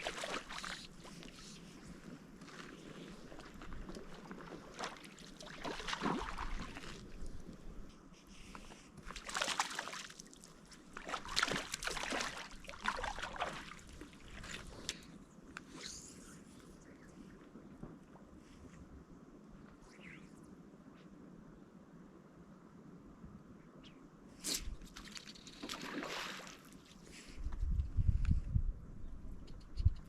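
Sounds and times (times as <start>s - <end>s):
water splashing and sloshing: 0.0s - 7.8s, 8.6s - 15.2s, 24.8s - 27.3s.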